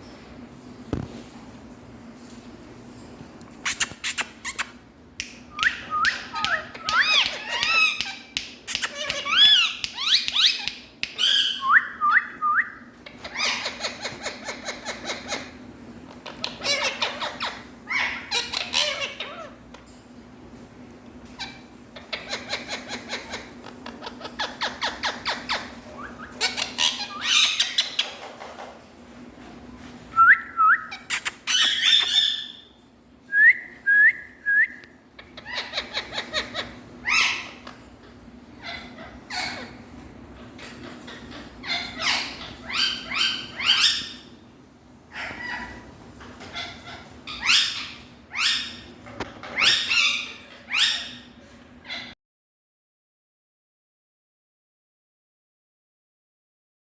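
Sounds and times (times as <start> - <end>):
parrot calling: 5.6 - 15.6, 16.2 - 19.6, 21.4 - 28.3, 30.6 - 32.8, 35.2 - 44.4, 45.1 - 52.2.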